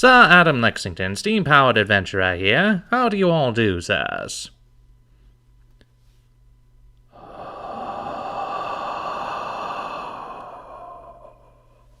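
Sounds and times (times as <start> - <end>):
long breathy hiss: 7.1 - 12.0.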